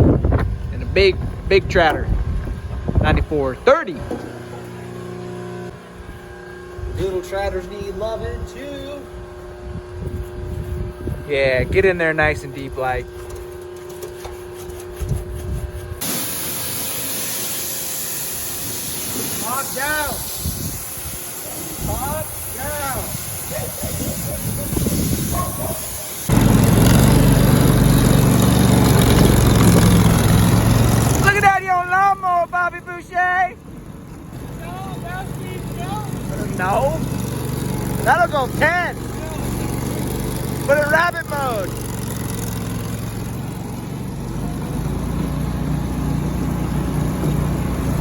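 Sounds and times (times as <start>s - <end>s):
riding lawn mower engine running: 19.4s - 48.0s.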